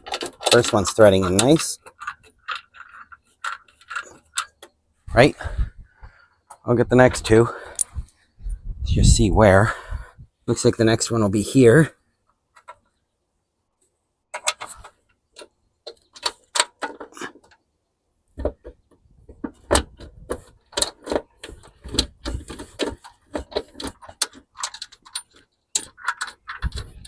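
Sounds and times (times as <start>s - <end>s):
metal bolts and washers clinking: 0.0s - 5.3s, 14.3s - 17.6s, 18.4s - 27.0s.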